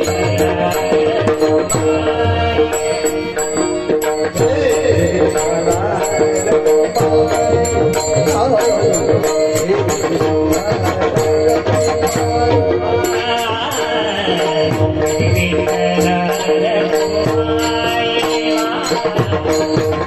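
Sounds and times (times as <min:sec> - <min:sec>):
hand drum: 0:00.0 - 0:13.7, 0:14.5 - 0:20.0
person singing: 0:00.0 - 0:20.0.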